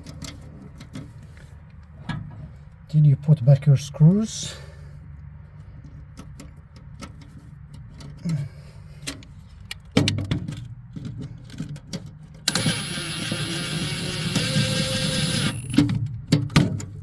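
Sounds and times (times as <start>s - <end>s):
power screwdriver running: 12.5s - 15.9s
screws and metal parts clicking: 12.5s - 16.0s.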